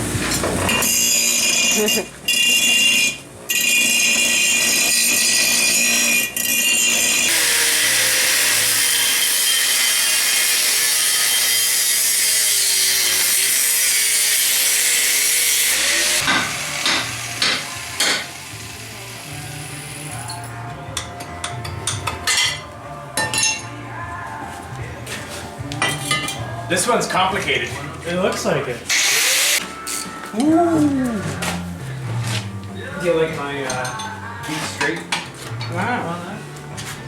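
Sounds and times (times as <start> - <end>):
angle grinder cutting steel: 0.8 - 20.4, 28.9 - 30.1.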